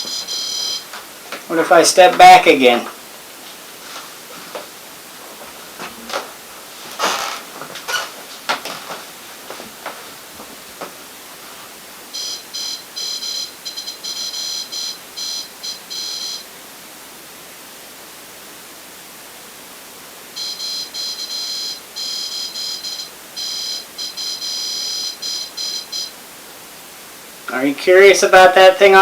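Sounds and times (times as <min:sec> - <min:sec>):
electronic alarm beeping: 0:00.0 - 0:00.9, 0:12.1 - 0:16.5, 0:20.4 - 0:26.2.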